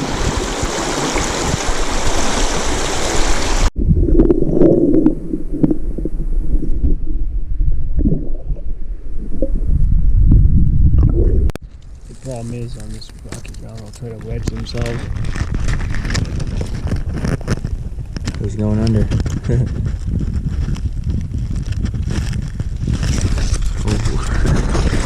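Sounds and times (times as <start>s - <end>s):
stream water rushing: 0.0s - 3.7s
low rumble: 3.7s - 11.6s.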